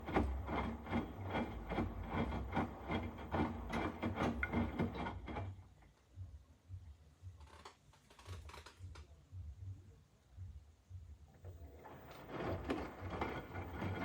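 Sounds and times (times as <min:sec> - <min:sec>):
washing machine knocking: 0:00.0 - 0:05.5, 0:12.0 - 0:14.0
washing machine humming: 0:00.0 - 0:05.7, 0:11.4 - 0:14.0.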